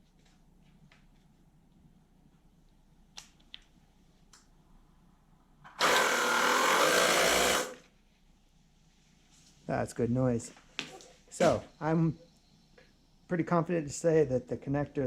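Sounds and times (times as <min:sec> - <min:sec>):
pressure washer motor running: 0:05.8 - 0:07.8.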